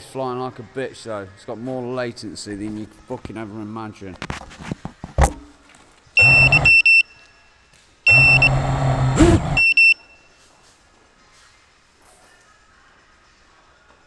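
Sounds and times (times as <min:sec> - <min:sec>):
quadcopter motors buzzing: 0:05.2 - 0:05.5, 0:06.2 - 0:07.0, 0:08.1 - 0:10.0
high electronic beeps: 0:06.2 - 0:07.0, 0:08.1 - 0:10.0.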